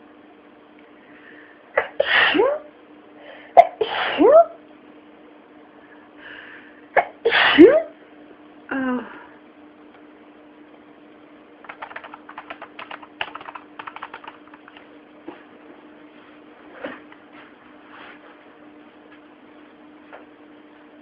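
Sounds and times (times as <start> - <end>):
person sneezing: 1.8 - 2.6, 3.6 - 4.5, 7.0 - 7.9.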